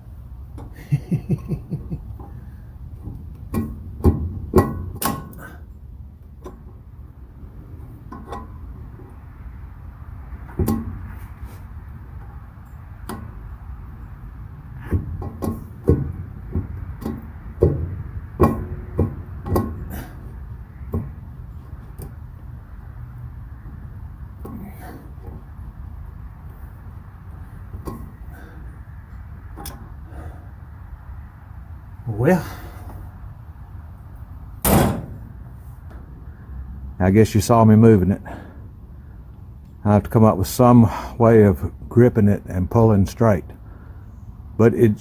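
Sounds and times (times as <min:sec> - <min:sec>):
hand tools clanking on metal: 0:02.2 - 0:05.6, 0:14.8 - 0:22.2, 0:27.8 - 0:28.6.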